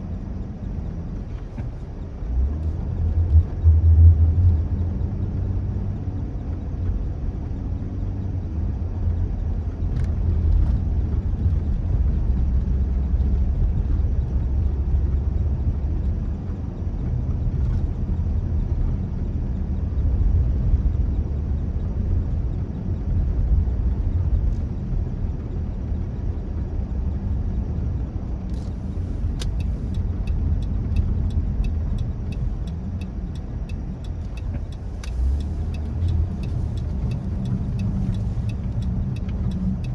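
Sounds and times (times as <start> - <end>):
car engine and tyres rumbling: 0.0 - 39.9
regular ticking: 29.2 - 39.9.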